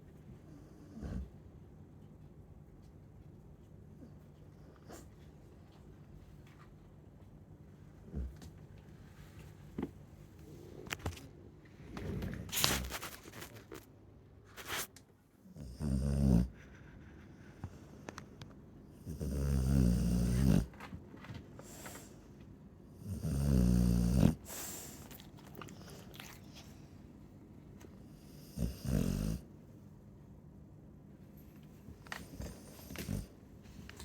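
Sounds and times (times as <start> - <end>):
dog snoring: 0.5 - 1.3, 15.4 - 16.9, 18.9 - 20.8, 22.9 - 25.0, 28.1 - 29.5, 32.1 - 33.4
soft dog breathing: 31.4 - 34.0.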